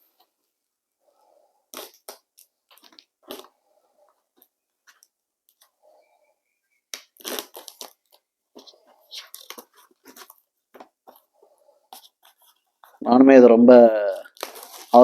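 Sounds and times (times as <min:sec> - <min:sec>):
cardboard box crunching: 0:14.4 - 0:15.0.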